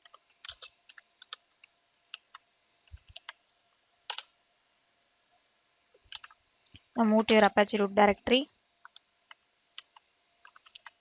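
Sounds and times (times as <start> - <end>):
keyboard keys clicking: 0.0 - 1.4, 2.9 - 3.4, 8.8 - 11.0.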